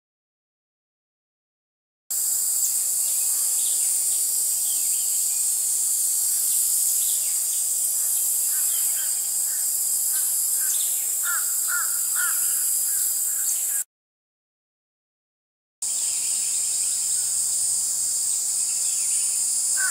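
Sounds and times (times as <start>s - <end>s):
cicadas chorus: 2.1s - 13.9s, 15.8s - 19.9s.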